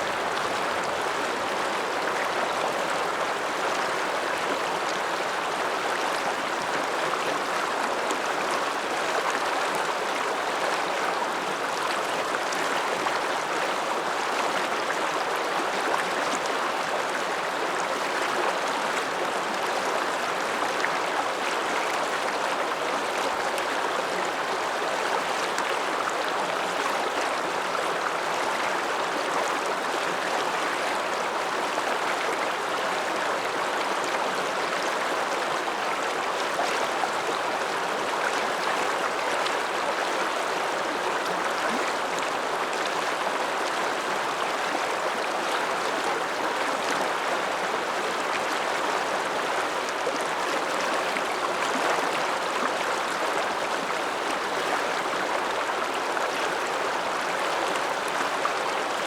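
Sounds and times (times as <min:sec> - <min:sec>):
river water rushing: 0:00.0 - 0:59.0.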